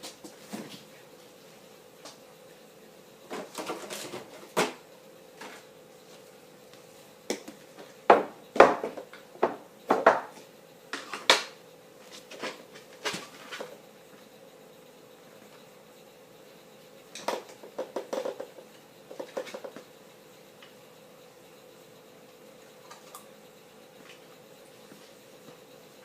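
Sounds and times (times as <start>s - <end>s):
faint steady hum: 0.0s - 26.0s.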